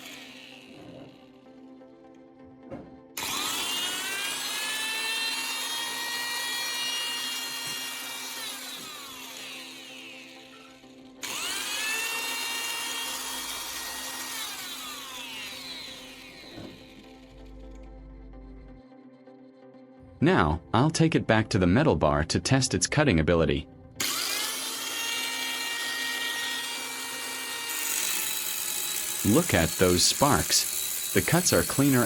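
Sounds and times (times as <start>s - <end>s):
angle grinder motor whining: 0.0s - 2.0s, 3.2s - 18.0s, 24.0s - 32.0s.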